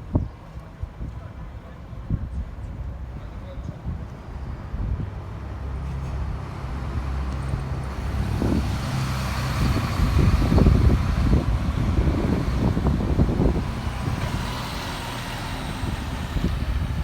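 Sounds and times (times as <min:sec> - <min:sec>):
large vehicle humming: 0:03.8 - 0:17.0
rough rapid rumble: 0:06.8 - 0:17.0.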